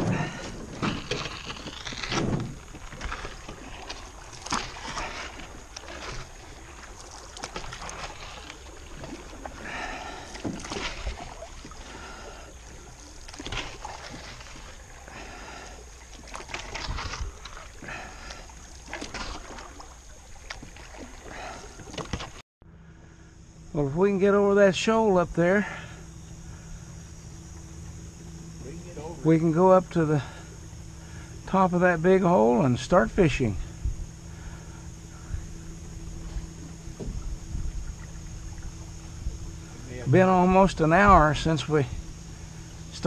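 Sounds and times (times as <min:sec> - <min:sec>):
knocks and scrapes against hull: 0:00.0 - 0:22.4, 0:33.8 - 0:39.8
water splashing around boat: 0:00.0 - 0:22.4, 0:24.0 - 0:43.0.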